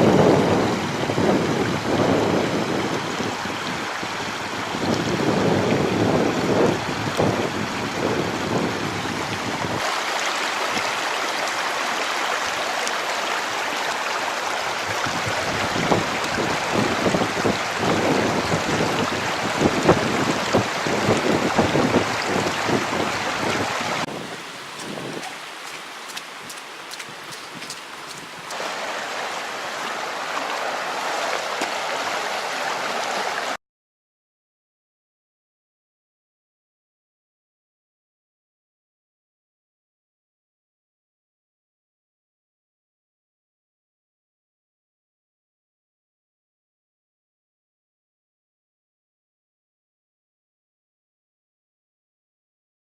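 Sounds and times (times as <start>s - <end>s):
flowing water rushing: 0.0s - 33.6s.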